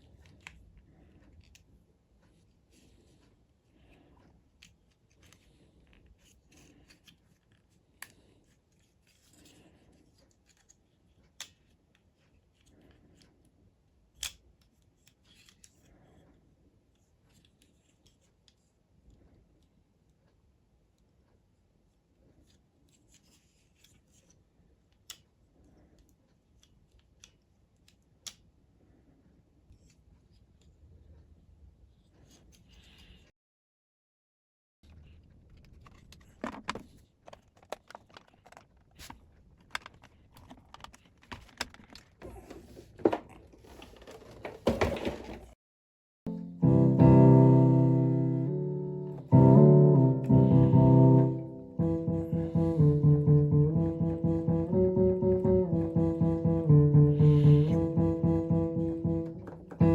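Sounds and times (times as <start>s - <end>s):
light clicks and taps of tools: 0.0s - 28.5s
handling small parts: 35.5s - 43.0s.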